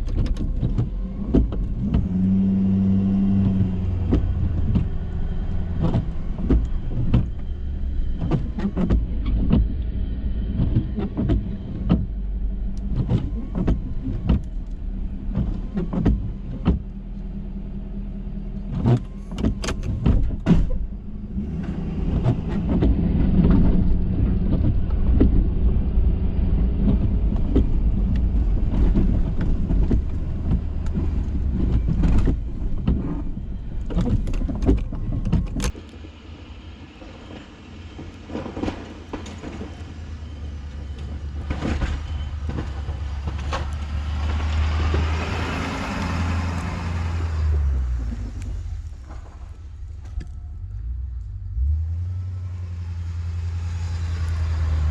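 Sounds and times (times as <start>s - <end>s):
plow knocks and clunks: 0.0s - 17.5s, 18.5s - 35.8s, 38.0s - 51.0s
truck engine hum: 0.0s - 54.9s.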